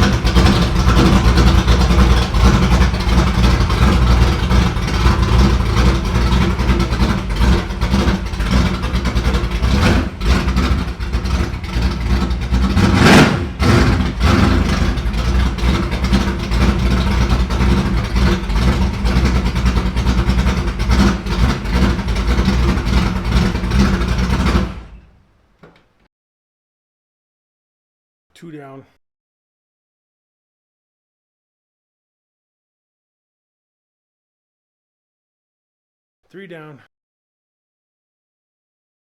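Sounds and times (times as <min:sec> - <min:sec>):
car engine running: 0:00.0 - 0:25.1.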